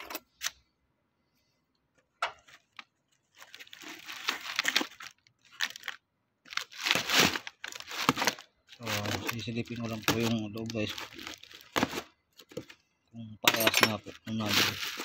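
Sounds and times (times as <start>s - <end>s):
packaging crinkling and rustling: 2.4s - 12.8s, 13.9s - 15.0s.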